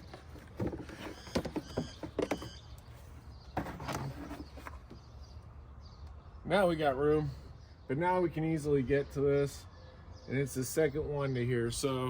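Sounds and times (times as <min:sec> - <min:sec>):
plastic squeaks: 0:00.0 - 0:05.1.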